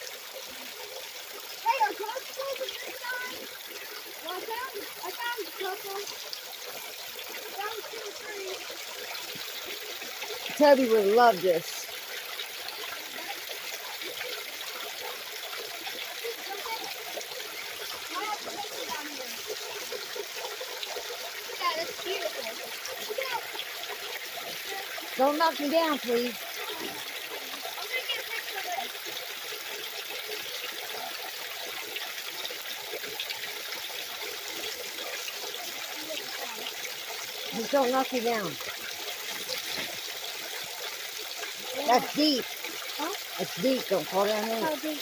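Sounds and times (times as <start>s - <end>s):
waterfall splashing over rocks: 0.0s - 45.0s.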